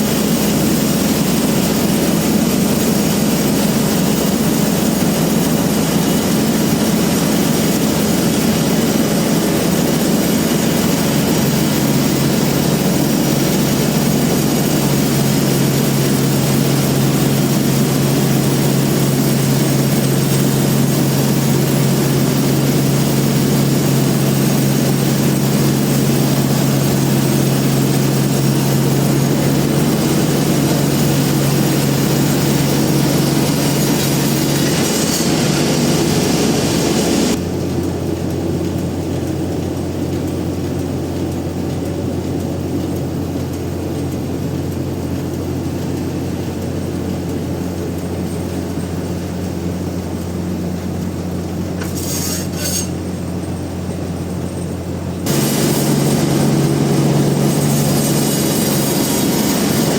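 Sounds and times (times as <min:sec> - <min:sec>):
sawmill machinery droning: 0:00.0 - 0:59.9
low hum: 0:54.2 - 0:59.9.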